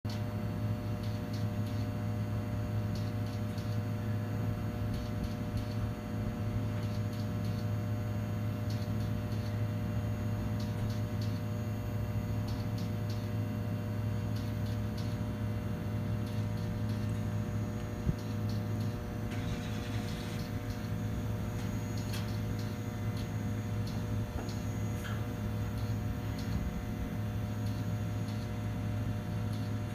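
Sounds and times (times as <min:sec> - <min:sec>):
faint ticks: 0:01.0 - 0:01.8, 0:02.9 - 0:03.8, 0:08.7 - 0:09.6, 0:10.6 - 0:11.4, 0:12.4 - 0:13.3, 0:14.2 - 0:15.2, 0:16.2 - 0:28.6, 0:29.4 - 0:29.9
transformer humming: 0:16.0 - 0:29.9.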